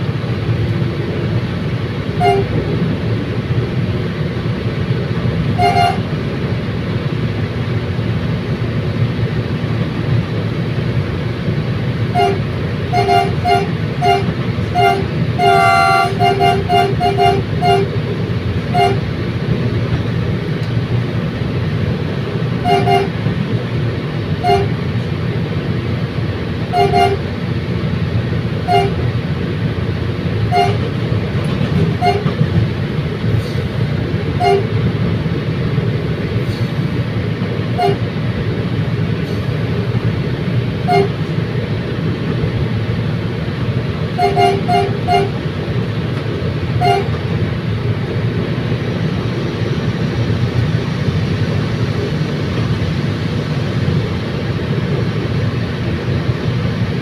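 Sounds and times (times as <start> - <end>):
train rumbling: 0.0 - 57.0
train horn short toots: 2.2 - 2.6, 5.5 - 6.1, 12.1 - 18.0, 18.7 - 19.1, 22.6 - 23.2, 24.4 - 24.8, 26.7 - 27.2, 28.6 - 29.0, 30.5 - 30.9, 31.9 - 32.4, 34.4 - 34.7, 37.8 - 38.0, 40.8 - 41.2, 44.2 - 45.4, 46.8 - 47.2.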